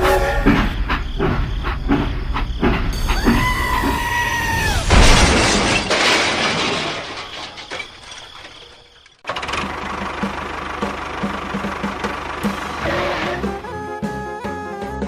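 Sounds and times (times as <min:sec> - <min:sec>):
loud crash: 0:04.5 - 0:09.0.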